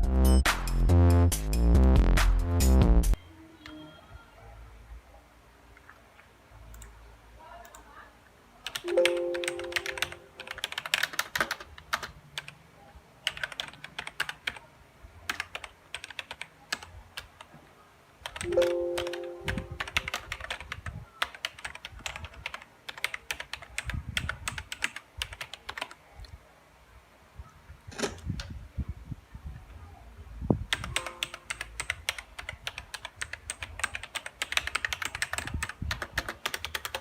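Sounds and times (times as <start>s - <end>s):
mechanical keyboard typing: 8.6s - 12.6s, 13.2s - 14.7s, 15.3s - 17.5s, 18.2s - 26.0s, 30.7s - 37.0s.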